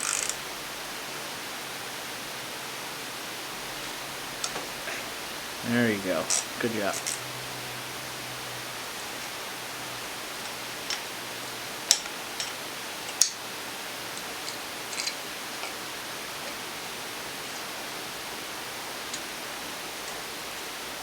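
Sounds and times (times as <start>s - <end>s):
hand ratchet clicking: 0.0s - 0.4s
steady hiss: 0.0s - 21.0s.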